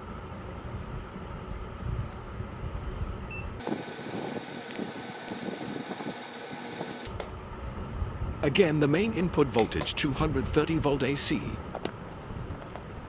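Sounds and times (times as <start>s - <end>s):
fan-like background noise: 0.0s - 13.0s.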